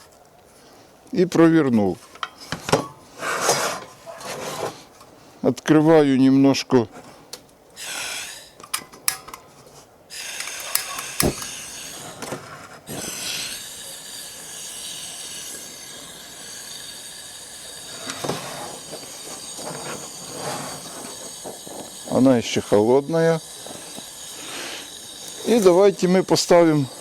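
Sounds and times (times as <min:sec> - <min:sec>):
gas burner hissing: 0:07.8 - 0:27.0
gas stove igniter clicks: 0:08.8 - 0:09.4, 0:10.4 - 0:11.7.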